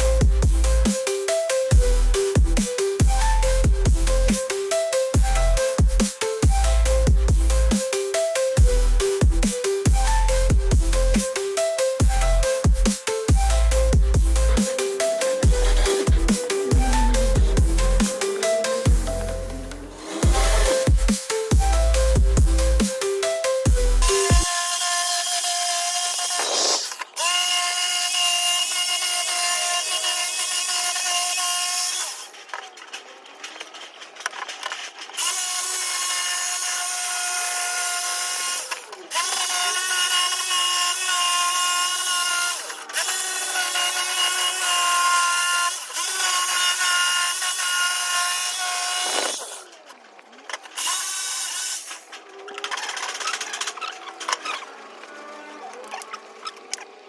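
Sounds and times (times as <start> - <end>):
power tool motor whining: 0.0 - 57.0.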